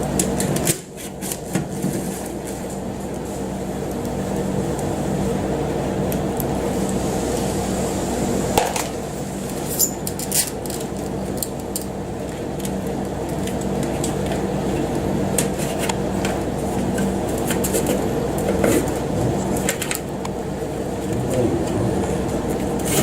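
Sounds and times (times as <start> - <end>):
machine humming: 18.0 - 23.0.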